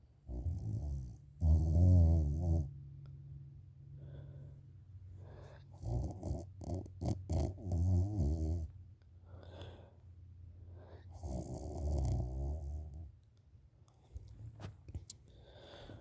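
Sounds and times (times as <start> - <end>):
soft breath: 3.8 - 5.8, 9.2 - 11.2, 14.0 - 16.0.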